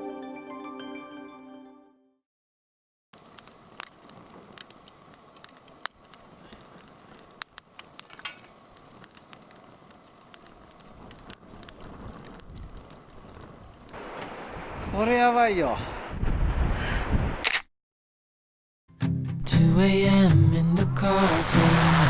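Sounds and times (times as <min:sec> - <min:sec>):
campfire crackling: 0:03.2 - 0:14.5, 0:19.0 - 0:22.0.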